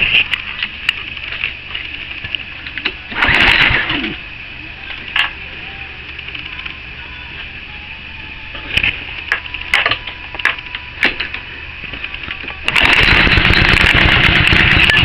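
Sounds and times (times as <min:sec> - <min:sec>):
loud rasping engine burst: 0:03.1 - 0:04.2, 0:12.7 - 0:15.0
small engine running: 0:03.1 - 0:04.2, 0:12.6 - 0:15.0.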